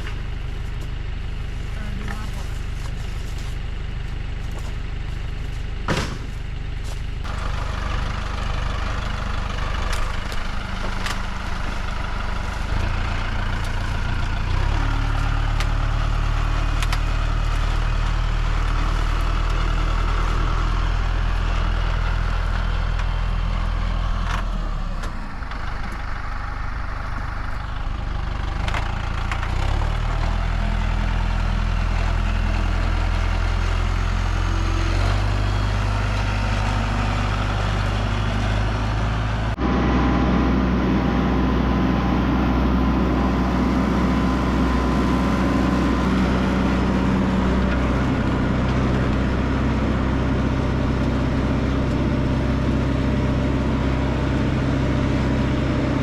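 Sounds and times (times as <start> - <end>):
tractor engine running: 0.0 - 56.0
sharp knocks: 5.9 - 6.4.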